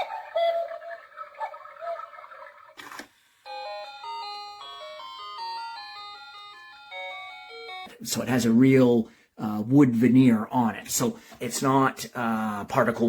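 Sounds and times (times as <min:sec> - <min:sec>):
cuckoo clock calls: 0:00.0 - 0:06.2
bell-like melody: 0:03.4 - 0:07.9.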